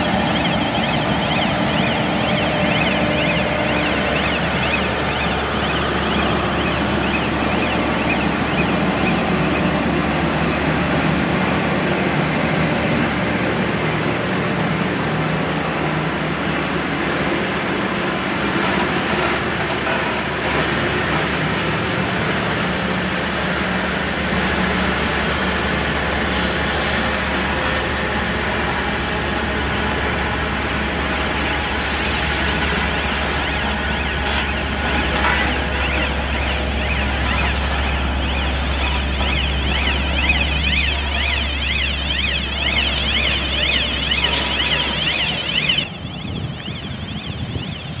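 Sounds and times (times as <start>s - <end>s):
heavy machine noise: 0.0s - 48.0s
siren-like warning tone: 0.0s - 48.0s.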